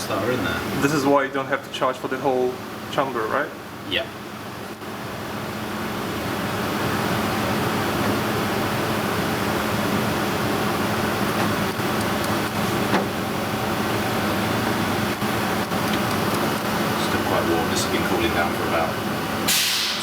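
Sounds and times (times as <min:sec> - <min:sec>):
fan blowing air: 0:00.0 - 0:20.0.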